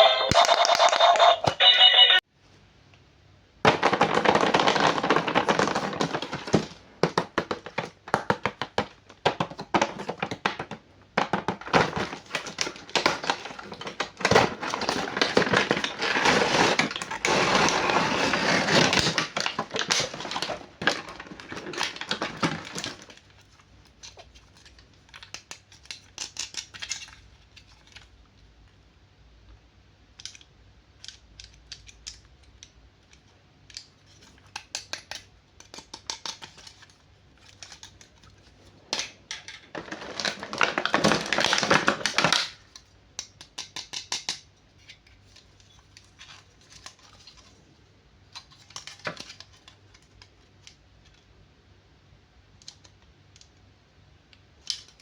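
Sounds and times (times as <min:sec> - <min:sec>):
packaging crinkling: 0:03.6 - 0:28.2, 0:33.9 - 0:42.9.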